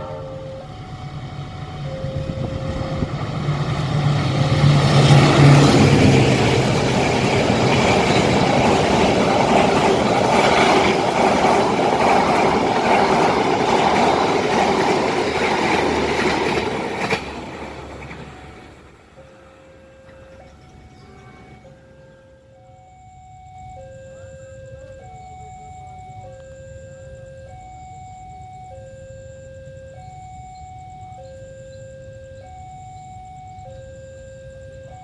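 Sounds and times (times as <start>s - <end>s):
train wheels clattering over rails: 3.0s - 19.1s.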